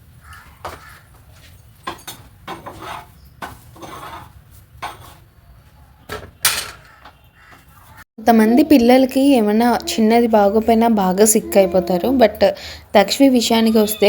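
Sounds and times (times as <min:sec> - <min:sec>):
dishes and utensils clattering: 0:01.8 - 0:05.2, 0:06.1 - 0:07.2.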